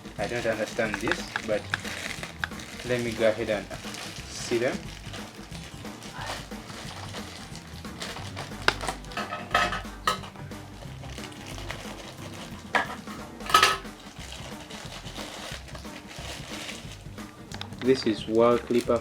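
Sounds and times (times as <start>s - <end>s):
plastic and metal accessories clicking: 0.2s - 3.8s, 6.8s - 10.4s.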